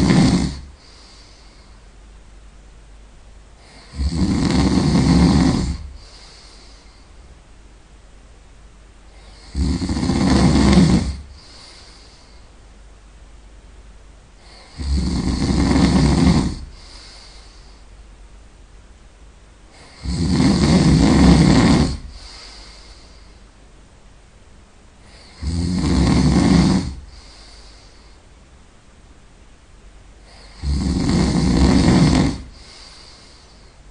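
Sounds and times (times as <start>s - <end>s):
person snoring loudly: 0.0s - 1.6s, 3.6s - 6.8s, 9.1s - 12.2s, 14.4s - 17.5s, 19.7s - 23.0s, 25.0s - 27.9s, 30.2s - 33.7s
soft breaths: 0.0s - 2.4s, 3.5s - 7.6s, 9.0s - 13.0s, 14.3s - 18.4s, 19.6s - 23.7s, 26.1s - 28.5s, 30.1s - 33.9s.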